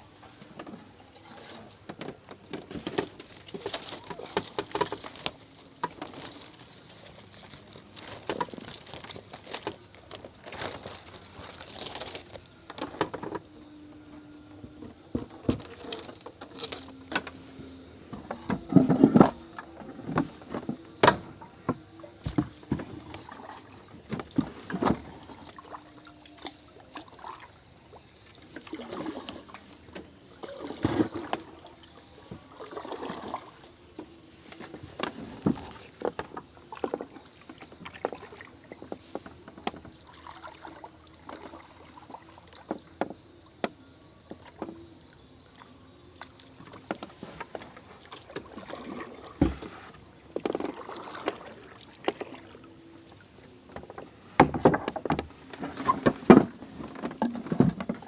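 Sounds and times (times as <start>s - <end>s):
paddle splashing in water: 2.4s - 13.3s, 22.2s - 42.8s, 46.2s - 58.0s.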